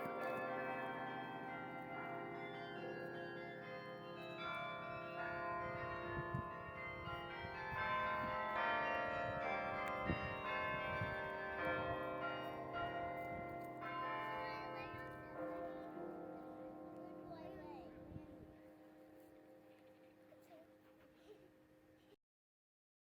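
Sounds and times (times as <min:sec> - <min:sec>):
carillon bells playing a tune: 0:00.0 - 0:17.9.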